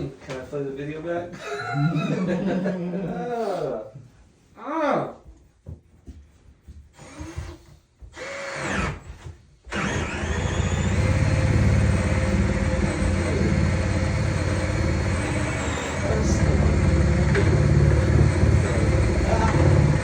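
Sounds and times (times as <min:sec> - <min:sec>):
small electric motor running: 0:09.7 - 0:20.0.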